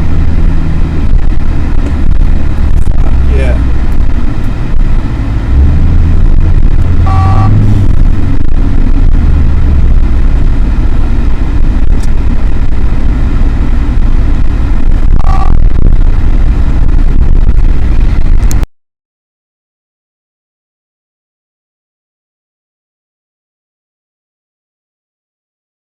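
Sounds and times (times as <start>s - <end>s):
car driving rumble: 0.0s - 18.7s
two-note electronic beeps: 7.0s - 7.6s, 15.2s - 15.7s.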